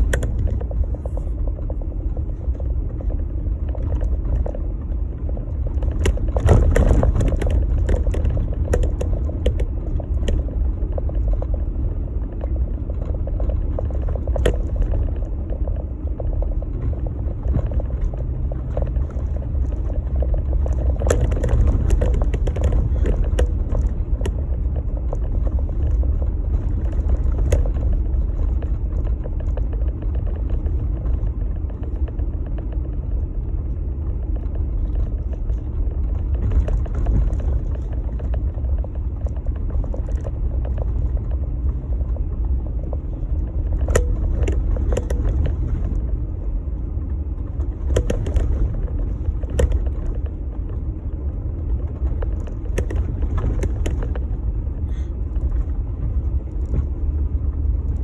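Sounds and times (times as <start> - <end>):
knocks and clicks: 0.0 - 2.3, 3.6 - 11.6, 12.4 - 31.2, 43.6 - 46.1, 47.6 - 50.9
engine and tyres rumbling: 0.0 - 58.0.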